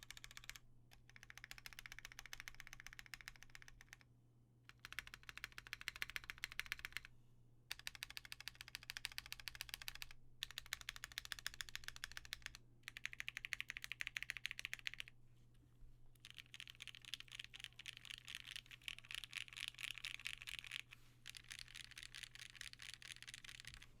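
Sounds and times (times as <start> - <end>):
fast typing on mechanical keyboard: 0.0 - 4.0, 4.7 - 7.1, 7.7 - 15.1, 16.2 - 23.9.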